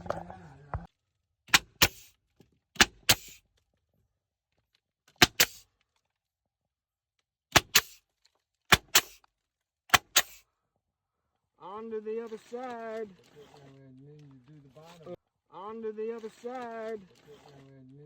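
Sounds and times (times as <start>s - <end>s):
nail gun firing: 1.5s - 2.1s, 2.8s - 3.4s, 5.2s - 5.7s, 7.5s - 8.0s, 8.7s - 9.2s, 9.9s - 10.4s
short hiss of air: 1.8s - 2.2s, 3.1s - 3.4s, 5.4s - 5.7s, 7.7s - 8.0s, 8.9s - 9.2s, 10.1s - 10.5s.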